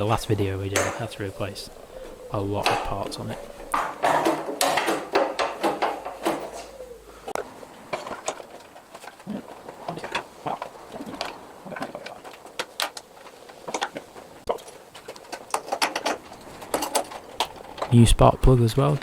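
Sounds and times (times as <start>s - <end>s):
tools and parts clicking: 2.6s - 6.7s.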